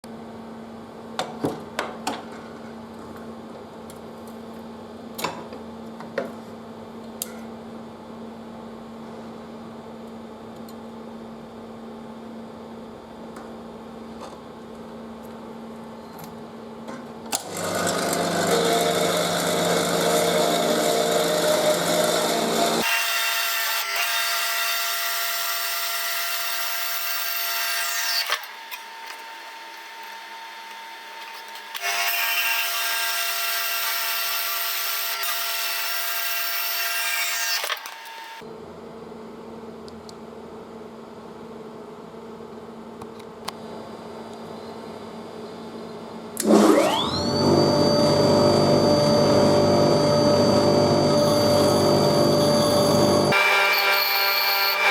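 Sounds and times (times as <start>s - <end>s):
lathe humming: 17.4s - 22.8s, 46.4s - 54.8s
tool cutting steel bar: 17.4s - 28.9s, 31.8s - 38.4s, 50.0s - 54.9s
high ringing tone: 47.4s - 53.4s.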